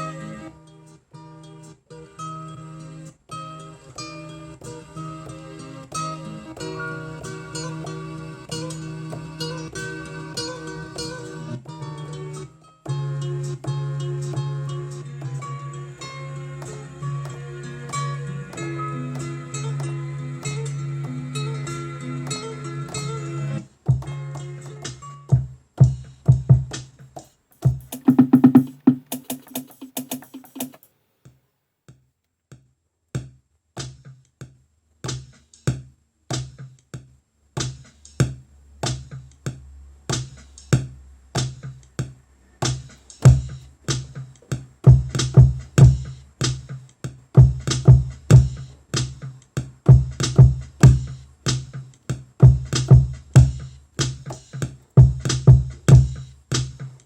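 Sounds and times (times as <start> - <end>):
drum hits: 27.6 - 30.9.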